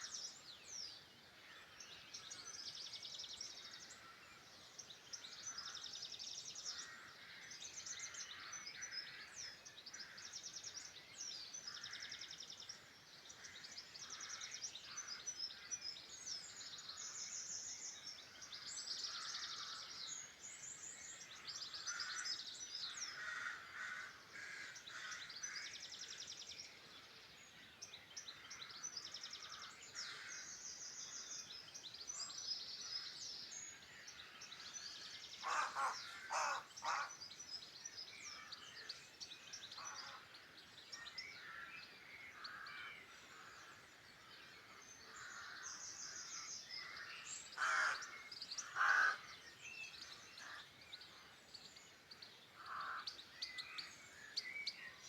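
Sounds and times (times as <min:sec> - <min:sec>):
songbirds singing: 0:00.0 - 0:55.0
loud harsh bird calls: 0:35.4 - 0:37.2, 0:39.8 - 0:40.3, 0:44.6 - 0:49.4, 0:52.6 - 0:53.1.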